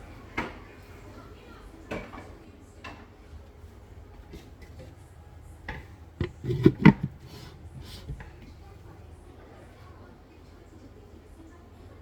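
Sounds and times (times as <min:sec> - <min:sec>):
cookware knocks: 0:05.7 - 0:08.6.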